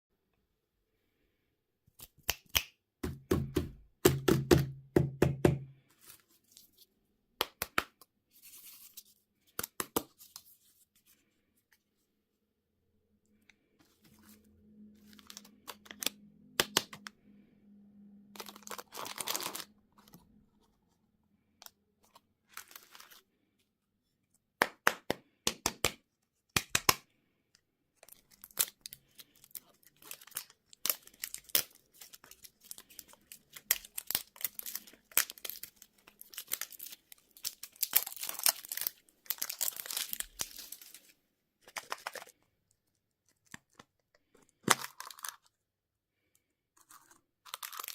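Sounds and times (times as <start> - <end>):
candy wrappers crinkling: 15.0 - 17.0, 18.3 - 20.4, 21.6 - 23.4, 28.0 - 45.7, 46.6 - 47.9.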